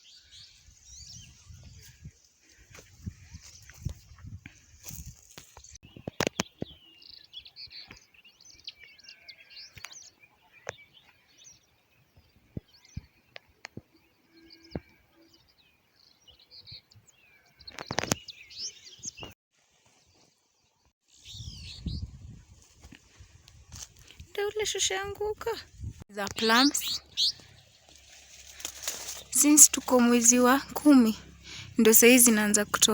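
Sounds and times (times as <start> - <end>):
small birds chirping: 0.0 - 19.4, 21.1 - 22.5, 24.0 - 32.9.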